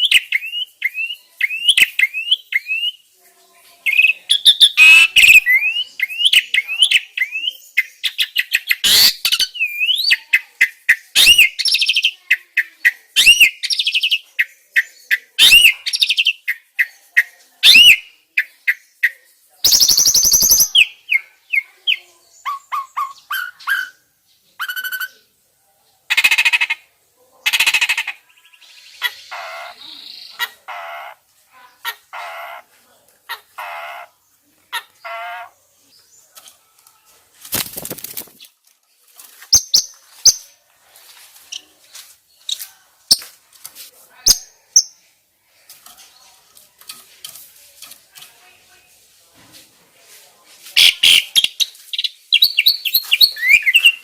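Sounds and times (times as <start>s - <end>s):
birds whistling chirps: 0.0s - 3.0s, 3.9s - 10.2s, 10.9s - 12.2s, 13.2s - 18.1s, 18.7s - 24.0s, 50.8s - 54.0s
harsh scratchy bird chatter: 0.0s - 24.0s, 26.1s - 36.6s, 37.3s - 45.0s, 45.6s - 49.2s, 50.6s - 54.0s
rasping bird call: 32.1s - 32.7s, 33.3s - 35.6s.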